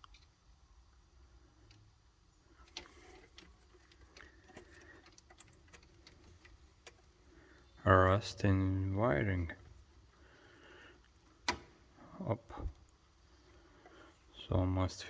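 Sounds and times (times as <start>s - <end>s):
low background hum: 0.0s - 15.0s
light clicks from handling wiring: 2.6s - 7.6s.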